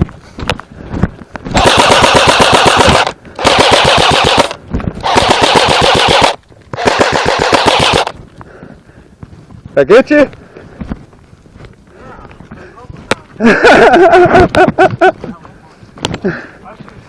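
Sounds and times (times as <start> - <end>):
airsoft gun firing bursts: 1.5 - 8.2.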